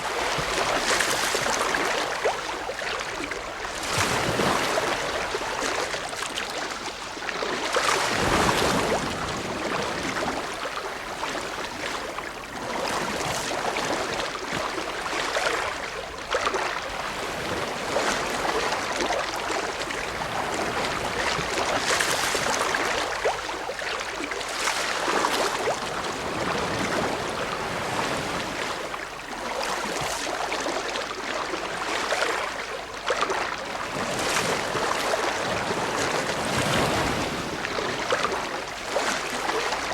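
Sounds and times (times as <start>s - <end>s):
ocean waves breaking: 33.7s - 39.9s.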